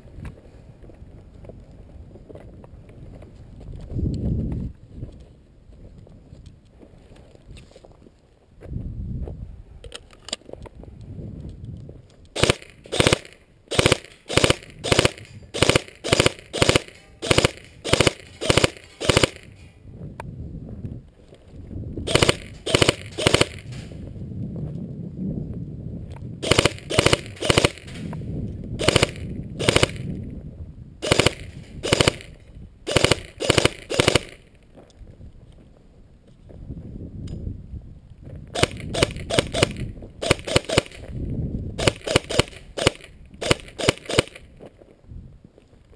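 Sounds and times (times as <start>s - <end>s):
airsoft gun shots: 12.4s - 19.6s, 22.1s - 24.0s, 26.4s - 28.1s, 28.8s - 30.1s, 31.0s - 34.5s, 38.6s - 41.1s, 41.8s - 44.4s.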